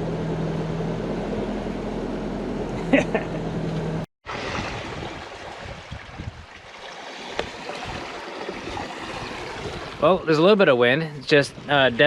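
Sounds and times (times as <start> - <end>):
water washing past hull: 4.2 - 12.0
wind on microphone: 4.3 - 6.7, 7.3 - 10.3.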